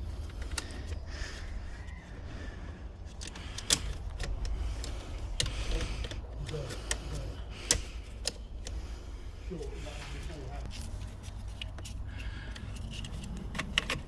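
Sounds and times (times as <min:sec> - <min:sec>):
low steady hum: 0:00.0 - 0:14.0
plastic and metal parts clicking: 0:00.2 - 0:01.0, 0:03.0 - 0:08.8, 0:10.6 - 0:14.0.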